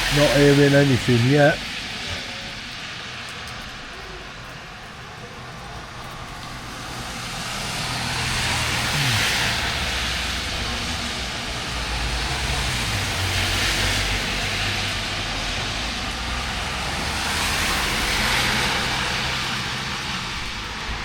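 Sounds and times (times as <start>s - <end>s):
low engine hum: 0.0s - 21.0s
traffic passing: 0.0s - 21.0s.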